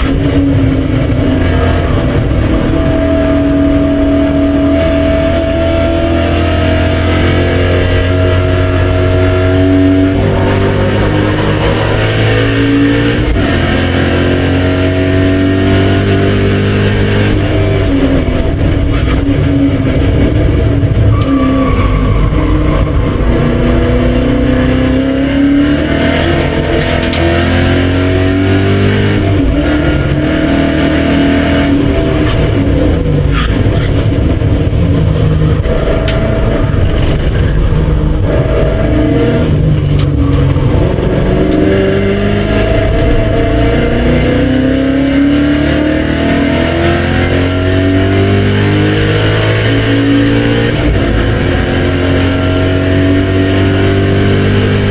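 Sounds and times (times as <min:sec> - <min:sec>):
car engine revving: 0:00.0 - 0:54.9.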